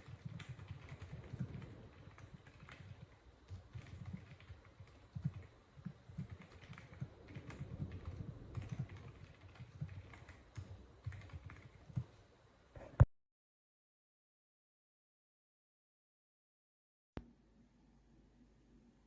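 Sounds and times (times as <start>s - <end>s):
mechanical keyboard typing: 0.0s - 12.1s.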